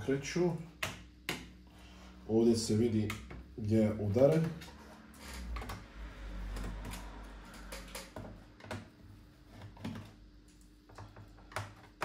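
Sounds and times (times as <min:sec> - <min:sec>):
low rumble: 0:04.6 - 0:08.2.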